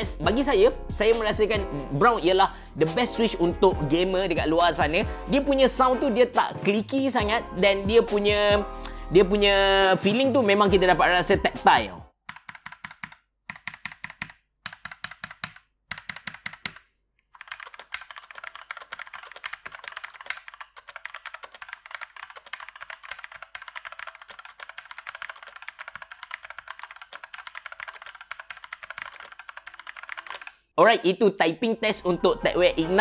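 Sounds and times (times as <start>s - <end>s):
typing on mechanical keyboard: 12.3s - 30.6s.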